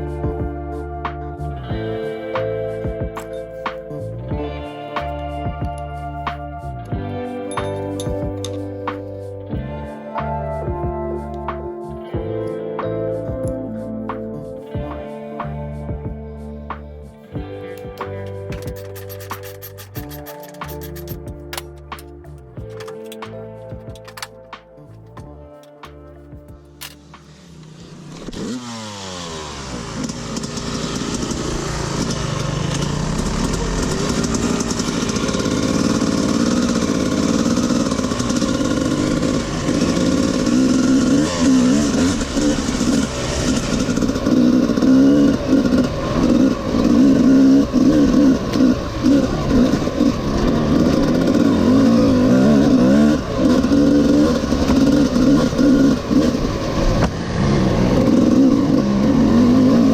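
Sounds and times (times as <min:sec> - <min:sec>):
two-stroke engine revving: 0:26.8 - 0:59.9.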